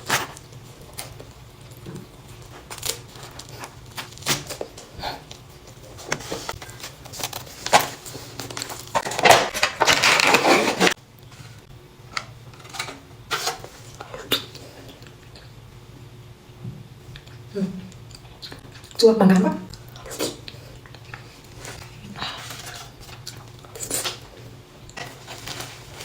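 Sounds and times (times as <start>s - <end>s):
chewing pastries: 0.0s - 11.0s.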